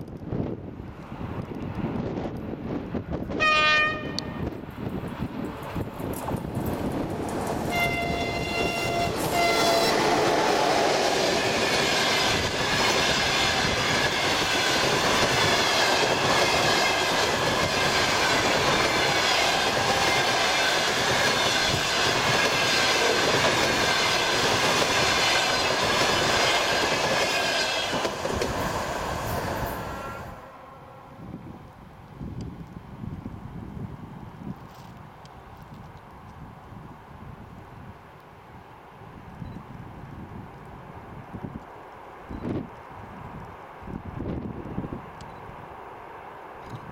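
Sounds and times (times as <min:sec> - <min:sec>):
locomotive horn: 0:03.4 - 0:04.5, 0:07.7 - 0:10.2, 0:29.9 - 0:31.4
train wheels clattering on rails: 0:04.8 - 0:29.8.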